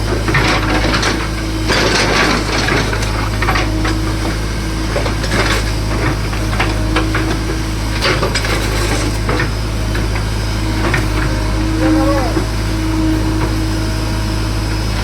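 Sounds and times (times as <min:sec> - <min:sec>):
excavator diesel engine running: 0:00.0 - 0:15.0
metal knocks and clatter: 0:00.1 - 0:04.3.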